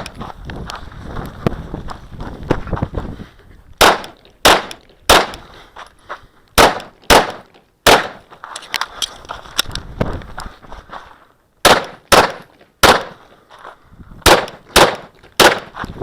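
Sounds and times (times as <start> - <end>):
pistol shots: 3.8 - 5.4, 6.6 - 8.3, 11.6 - 13.2, 14.2 - 15.8.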